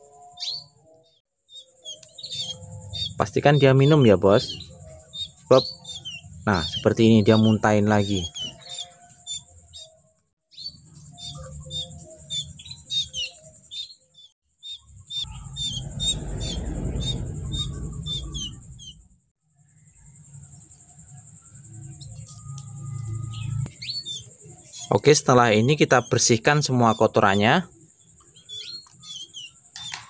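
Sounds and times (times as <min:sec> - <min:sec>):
young canaries chirping: 0:00.4 - 0:00.7, 0:01.5 - 0:19.0, 0:23.1 - 0:30.0
low rumbling noise: 0:15.0 - 0:19.3.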